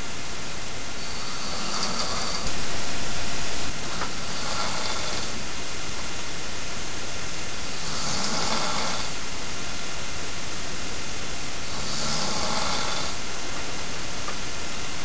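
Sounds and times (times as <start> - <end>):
steady hiss: 0.0 - 15.0
man snoring: 1.0 - 2.6, 3.6 - 5.4, 7.6 - 9.2, 11.6 - 13.3.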